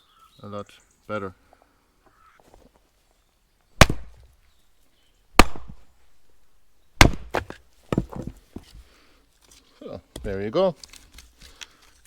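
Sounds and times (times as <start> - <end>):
maul striking log: 3.8 - 4.2, 5.4 - 5.9, 7.0 - 8.7.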